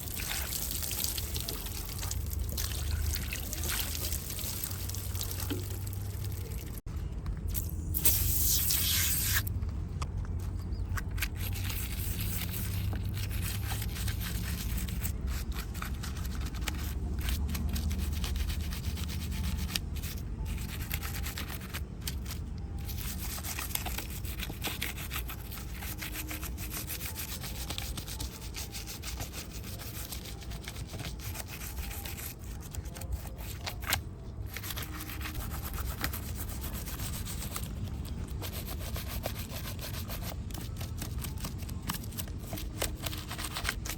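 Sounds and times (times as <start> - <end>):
scratchy rubbing and scrubbing: 10.4 - 43.9.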